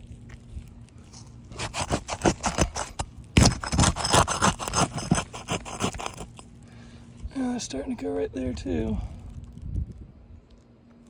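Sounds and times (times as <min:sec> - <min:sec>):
roof shingle being pulled loose: 0:01.5 - 0:06.4.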